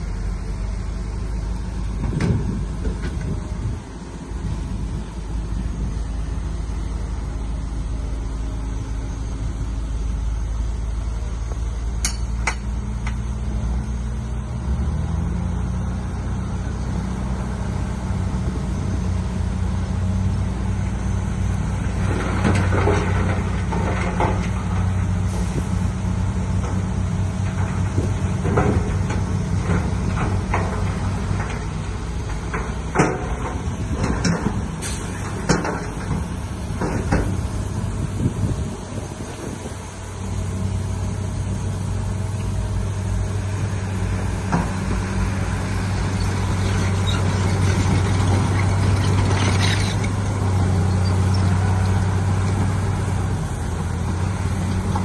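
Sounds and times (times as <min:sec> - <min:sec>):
diesel machinery engine running: 0:00.0 - 0:55.0
metallic clanks and knocks: 0:12.0 - 0:12.7, 0:27.4 - 0:37.4.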